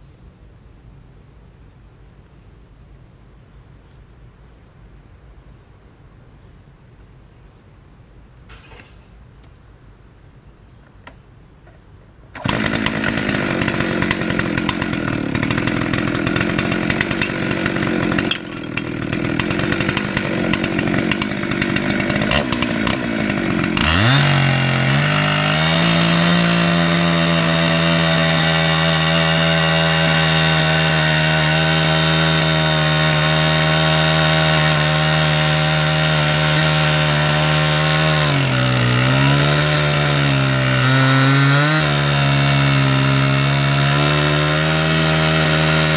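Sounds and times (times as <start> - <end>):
chainsaw cutting a log: 12.4 - 45.9.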